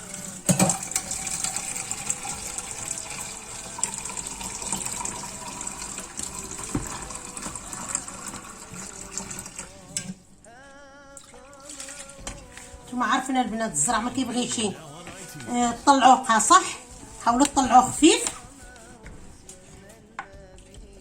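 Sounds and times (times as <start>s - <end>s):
water pouring into a bowl: 0.0s - 10.2s, 11.2s - 12.4s.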